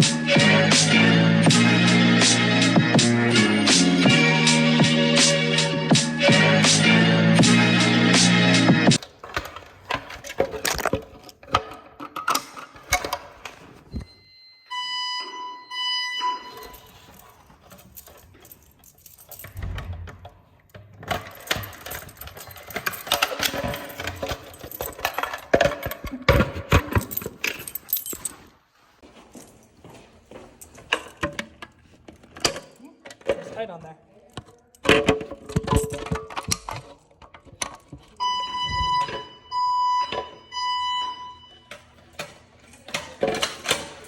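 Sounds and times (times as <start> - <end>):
keys and metal hardware jangling: 16.4 - 28.6, 29.3 - 32.8.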